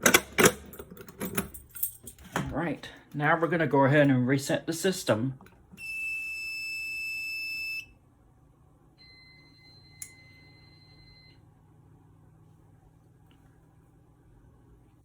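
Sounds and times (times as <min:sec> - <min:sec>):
high electronic alarm beep: 0:05.8 - 0:07.9.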